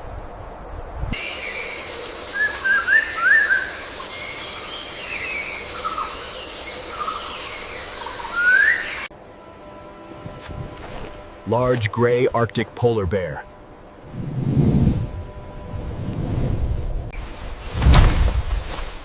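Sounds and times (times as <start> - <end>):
steady hiss: 0.0 - 9.1
birds chirping: 1.2 - 9.1
low rumble: 13.4 - 18.8.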